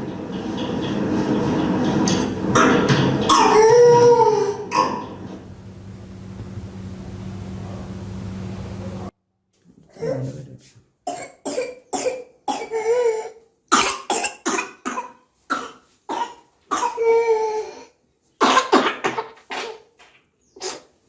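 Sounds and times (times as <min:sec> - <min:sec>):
person coughing harshly: 0:11.1 - 0:17.2, 0:18.4 - 0:19.8.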